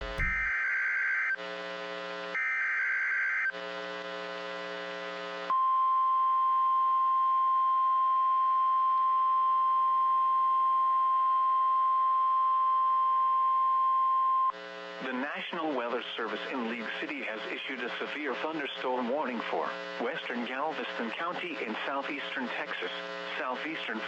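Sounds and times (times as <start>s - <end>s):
low buzz: 0.0s - 0.5s
steady warning alarm tone: 0.0s - 0.8s.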